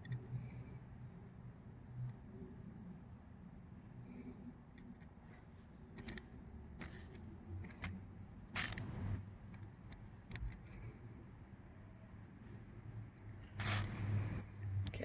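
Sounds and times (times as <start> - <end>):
faint clicks and taps: 8.6 - 10.9
aerosol spray hiss: 13.6 - 14.2.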